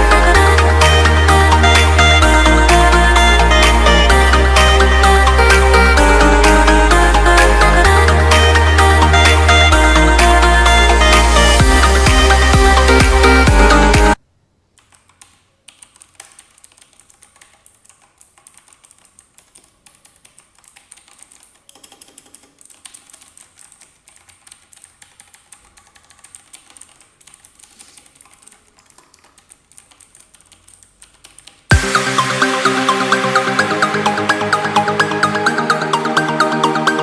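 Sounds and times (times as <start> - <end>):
mechanical keyboard typing: 14.8 - 31.7.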